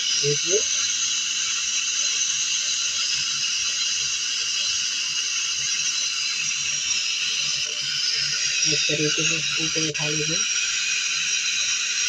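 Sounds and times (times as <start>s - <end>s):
static hiss from speaker: 8.6s - 10.4s.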